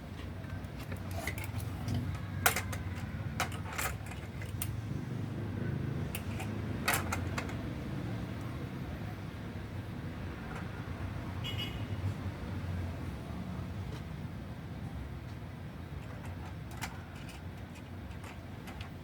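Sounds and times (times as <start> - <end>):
small hard parts clicking: 0.4 - 4.8, 6.1 - 7.7, 15.9 - 19.0.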